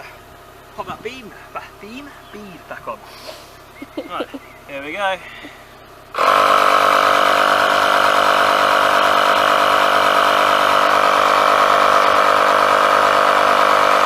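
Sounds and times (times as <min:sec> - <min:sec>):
electric tyre inflator running: 0:05.3 - 0:14.0.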